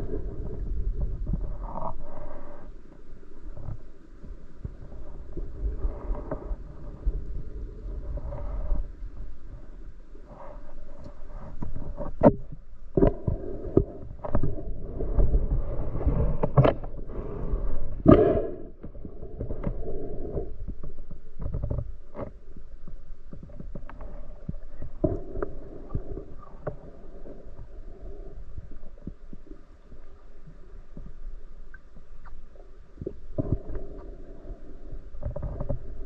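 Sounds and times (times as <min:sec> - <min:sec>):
low underwater rumble: 0:00.0 - 0:36.0
underwater knocks and clicks: 0:11.0 - 0:17.2, 0:18.1 - 0:36.0.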